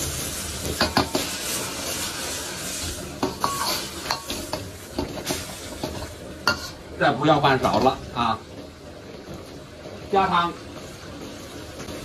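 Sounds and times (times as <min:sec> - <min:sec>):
metal utensil scraping a pan: 0:00.0 - 0:08.0
fish sizzling in a wok: 0:00.0 - 0:12.0.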